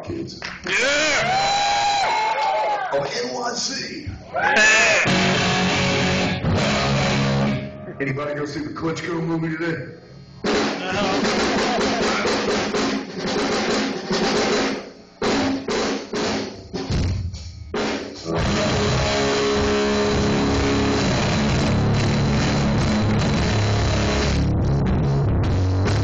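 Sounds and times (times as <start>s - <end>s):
drums playing: 4.1s - 7.9s, 10.2s - 26.0s
rock band playing: 4.5s - 8.0s, 10.4s - 26.0s.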